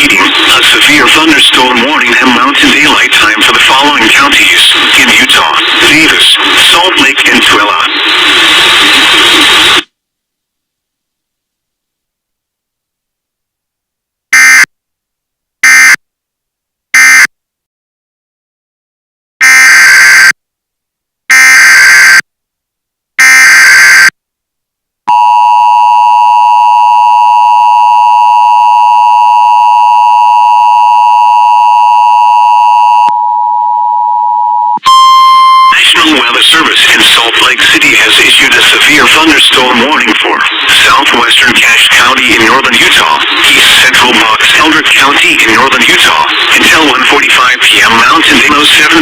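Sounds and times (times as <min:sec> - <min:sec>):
harsh two-tone attention signal: 0:14.4 - 0:14.7, 0:15.6 - 0:16.0, 0:17.0 - 0:17.3, 0:19.4 - 0:20.3, 0:21.3 - 0:22.2, 0:23.2 - 0:24.1, 0:25.1 - 0:36.0.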